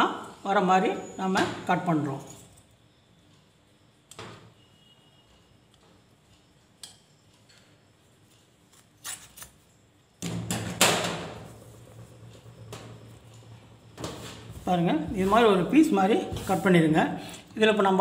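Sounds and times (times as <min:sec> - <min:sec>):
scissors cutting cloth: 0:08.7 - 0:09.6.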